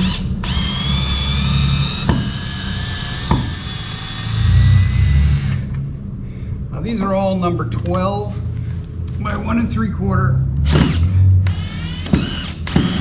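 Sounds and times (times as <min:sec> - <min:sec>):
power drill whining: 0:00.0 - 0:05.8, 0:10.6 - 0:13.0.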